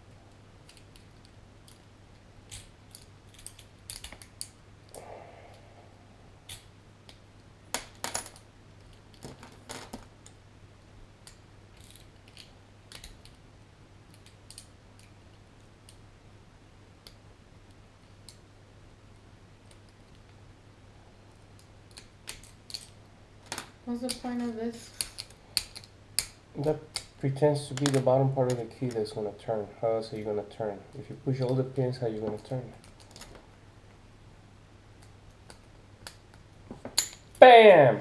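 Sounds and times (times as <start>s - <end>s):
lock picks clicking and scraping: 0.6s - 4.6s, 11.2s - 13.4s, 21.4s - 23.0s, 24.8s - 27.2s, 32.4s - 33.4s.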